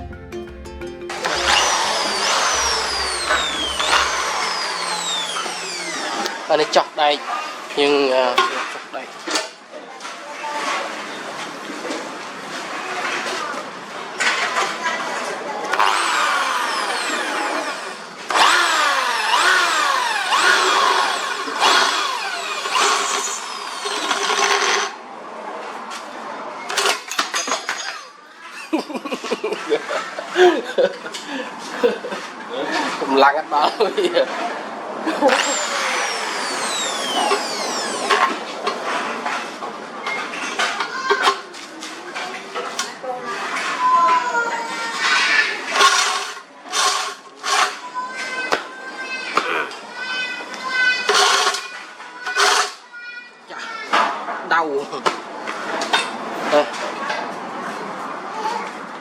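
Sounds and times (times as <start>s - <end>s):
power drill cutting steel: 1.2s - 6.7s, 15.7s - 25.0s, 35.3s - 38.4s, 45.7s - 47.8s, 51.0s - 52.8s.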